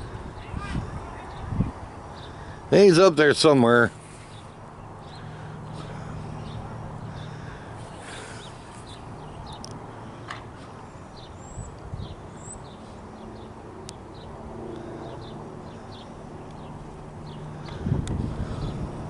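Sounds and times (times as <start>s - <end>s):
distant helicopter drone: 0.0s - 19.0s
small birds chirping: 0.4s - 2.6s, 4.0s - 18.9s.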